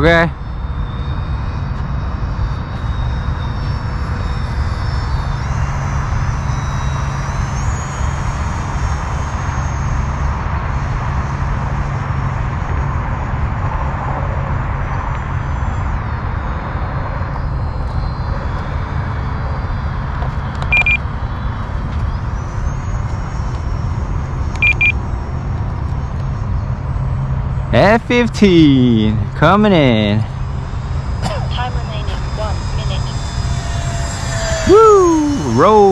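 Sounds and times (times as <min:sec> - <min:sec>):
model jet fans whining: 0:00.0 - 0:35.9
short electronic beeps: 0:20.7 - 0:21.0, 0:24.6 - 0:25.0
low rumble: 0:29.1 - 0:35.9.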